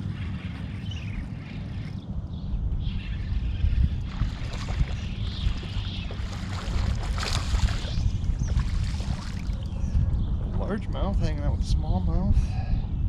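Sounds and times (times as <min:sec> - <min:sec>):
wind buffeting microphone: 0:00.0 - 0:13.0
water noise: 0:02.9 - 0:11.6
water splash: 0:04.1 - 0:09.7.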